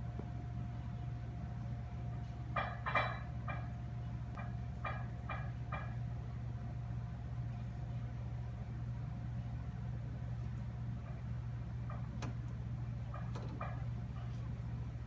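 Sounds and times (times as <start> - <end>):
refrigerator humming: 0.0 - 15.0.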